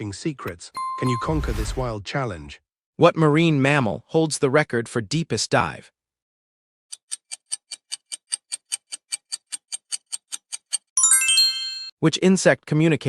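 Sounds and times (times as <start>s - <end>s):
countdown timer ticking: 0.5s - 1.6s
bright ringing chime: 0.8s - 1.9s, 11.0s - 11.9s.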